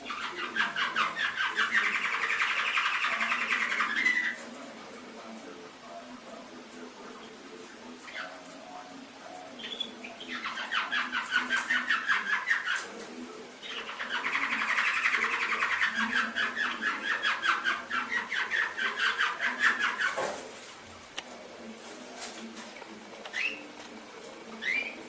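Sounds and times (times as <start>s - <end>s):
canary trilled song: 0.0s - 4.4s, 9.5s - 12.8s, 24.6s - 25.0s.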